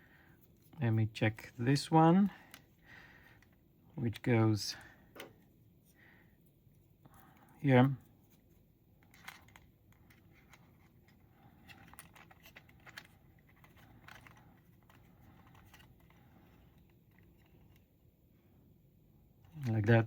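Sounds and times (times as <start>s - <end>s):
light clicks of model parts: 9.0s - 17.9s.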